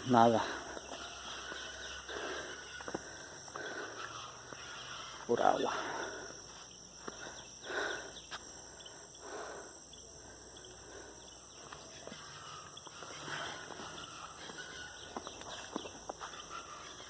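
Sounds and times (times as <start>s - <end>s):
insects chorus: 0.0s - 17.0s.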